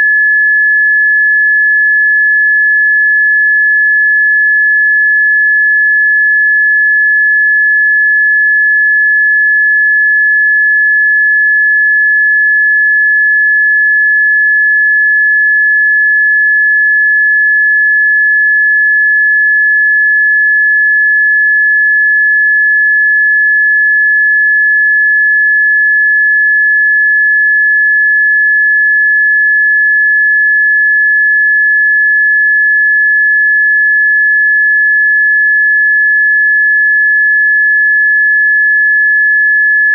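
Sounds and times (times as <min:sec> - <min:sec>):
high-pitched sine tone: 0:00.0 - 0:39.9.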